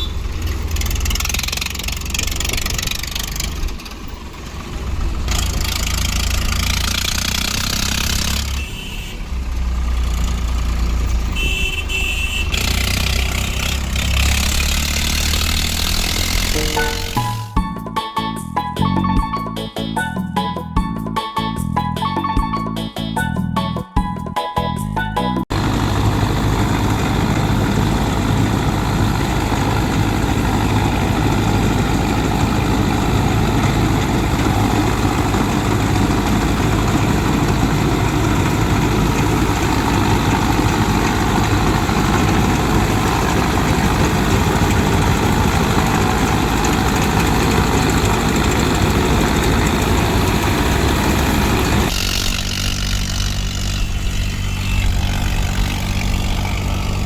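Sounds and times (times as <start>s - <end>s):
engine hum with low drone: 0.0s - 17.7s, 25.4s - 57.0s
diesel engine running: 0.0s - 22.9s, 25.4s - 57.0s.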